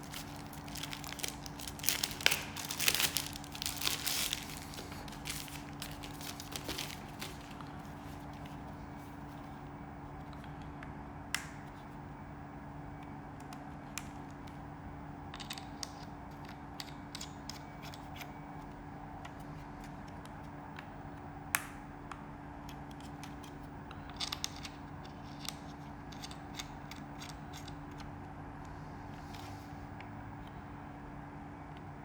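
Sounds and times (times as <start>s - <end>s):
hands handling plastic packaging: 0.0s - 9.4s
steady low hum: 0.0s - 15.3s.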